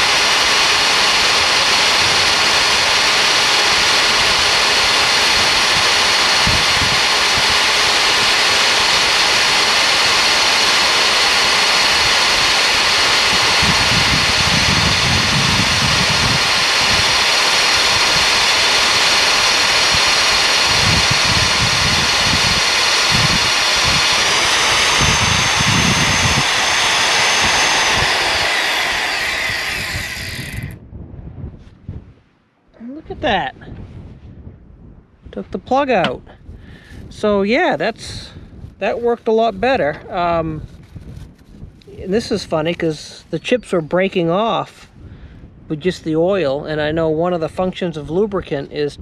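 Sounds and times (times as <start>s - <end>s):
drill cutting steel: 0.0s - 30.8s
drill motor whining: 0.0s - 30.8s.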